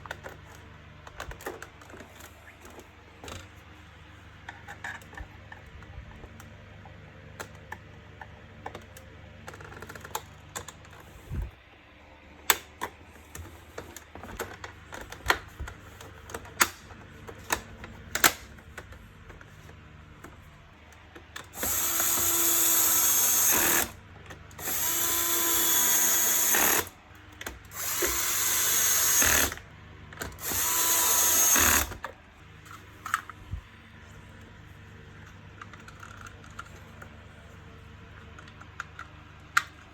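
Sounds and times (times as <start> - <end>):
plastic parts clicking and knocking: 0.0 - 3.6, 4.3 - 11.5, 12.5 - 33.8, 35.2 - 37.2
electric screwdriver driving screws: 21.5 - 24.0, 24.6 - 27.0, 27.7 - 29.6, 30.3 - 32.1.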